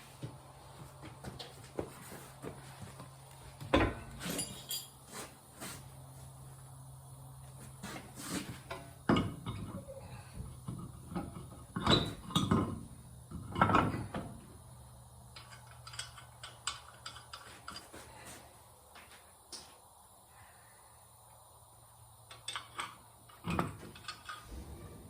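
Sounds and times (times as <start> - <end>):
steady low hum: 0.0 - 25.0
metal tools clanking and knocking: 3.8 - 5.0, 10.6 - 14.2, 15.4 - 17.9, 22.4 - 25.0.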